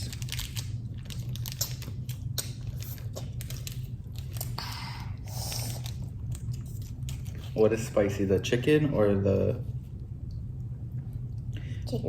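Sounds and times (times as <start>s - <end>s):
food packaging clicks: 0.0s - 4.6s
packaging rustle: 0.0s - 4.8s
low hum: 0.0s - 12.0s
soft chewing: 1.1s - 7.7s.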